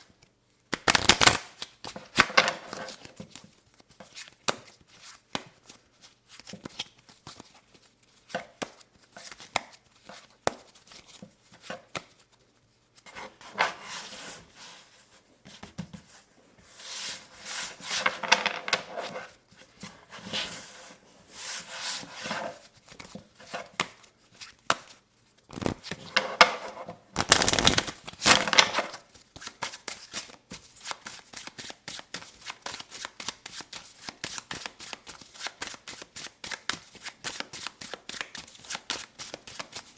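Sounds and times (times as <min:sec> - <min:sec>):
cards shuffling: 0:00.7 - 0:01.7, 0:25.5 - 0:26.0, 0:27.2 - 0:28.8
playing cards tapping and flicking: 0:00.7 - 0:03.4, 0:25.5 - 0:26.0, 0:27.2 - 0:39.9
cards rubbing and sliding: 0:00.8 - 0:01.4, 0:25.5 - 0:25.8, 0:27.2 - 0:28.6.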